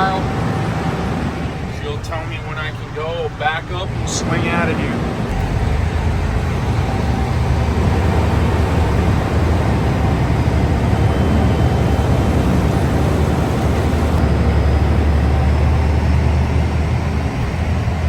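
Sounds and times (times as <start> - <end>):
truck engine running: 0.0 - 18.0.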